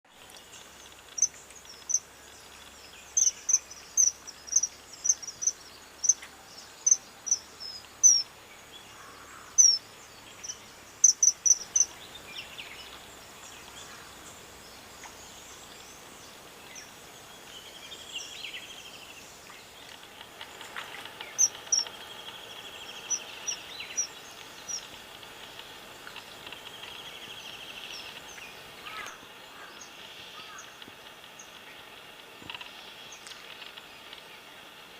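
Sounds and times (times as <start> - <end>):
kingfisher calling: 3.1 - 6.2, 6.8 - 8.3, 8.9 - 12.0, 21.0 - 24.9.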